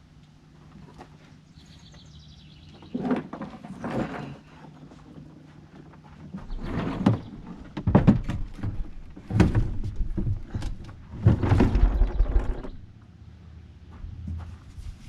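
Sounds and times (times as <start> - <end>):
plastic knocks and scraping: 6.3 - 12.8.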